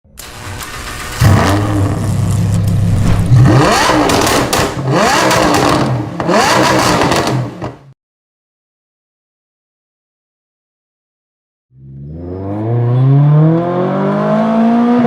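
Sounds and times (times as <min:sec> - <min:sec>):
car engine revving: 0:00.2 - 0:07.9, 0:11.8 - 0:15.0.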